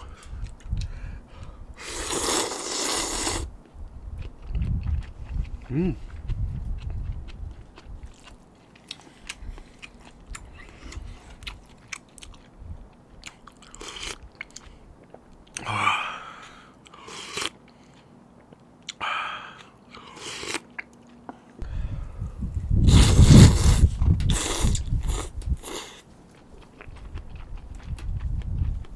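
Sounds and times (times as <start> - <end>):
person chewing noodles: 0.0 - 21.4, 22.8 - 28.9
loud slurping noises: 1.8 - 3.5, 22.8 - 26.0.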